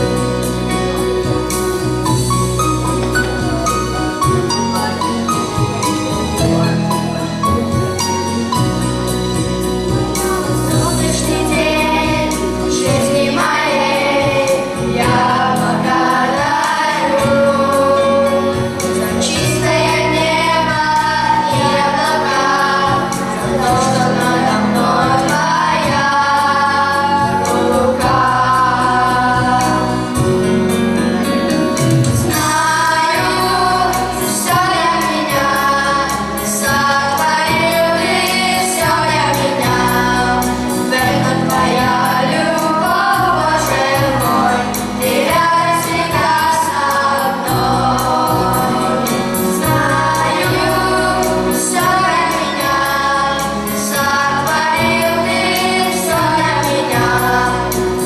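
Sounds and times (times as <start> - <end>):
choir singing a hymn: 0.0 - 7.8, 8.5 - 58.0
keyboard accompaniment: 0.0 - 58.0.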